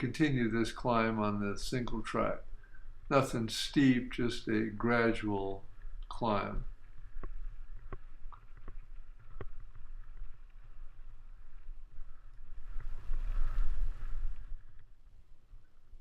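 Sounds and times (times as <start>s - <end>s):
wind rumble on microphone: 5.6s - 16.0s
bike ticks and rattles: 5.8s - 13.0s.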